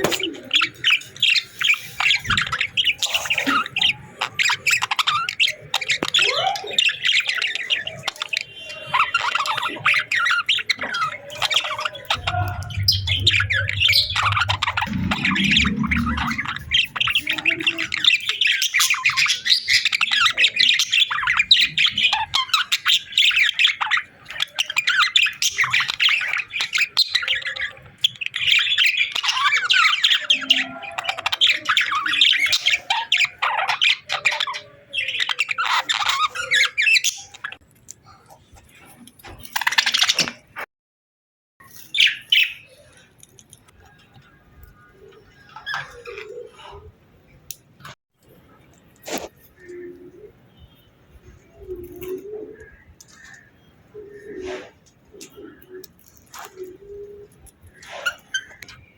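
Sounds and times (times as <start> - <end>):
budgerigars chirping: 6.7 - 37.6
low hum: 12.2 - 17.1.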